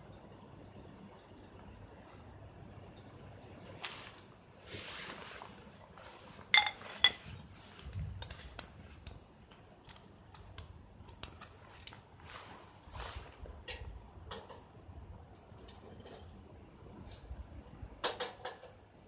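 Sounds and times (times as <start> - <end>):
cookware and cups clinking: 6.5 - 7.4.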